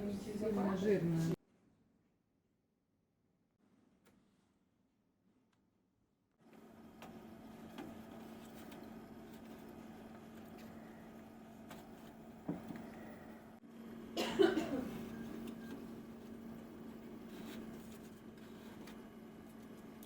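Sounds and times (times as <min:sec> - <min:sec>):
steady low hum: 0:06.5 - 0:20.0.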